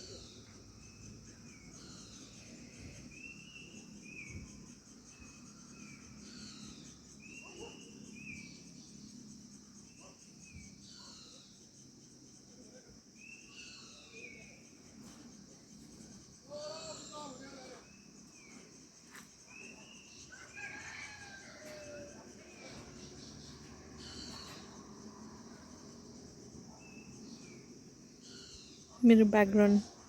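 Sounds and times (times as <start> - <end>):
insects chirring: 0.0 - 30.0
birds whistling calls: 22.5 - 24.8.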